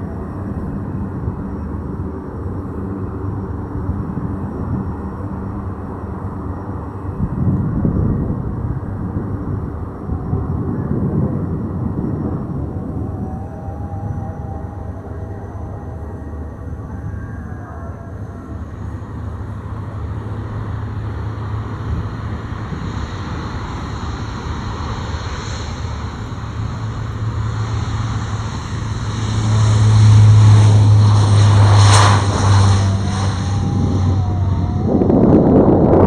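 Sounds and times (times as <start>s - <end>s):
turboprop engines drone: 0.0s - 36.0s.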